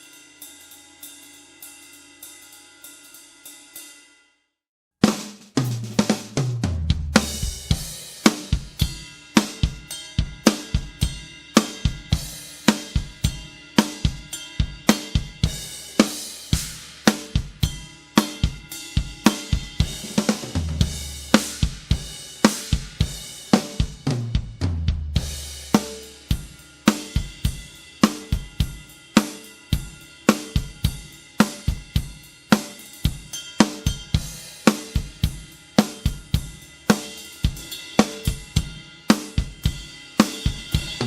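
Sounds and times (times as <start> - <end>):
drum kit beat with cymbals: 0.0 - 4.0, 5.0 - 41.0
low drum notes stepping down: 5.6 - 7.8, 24.0 - 25.6.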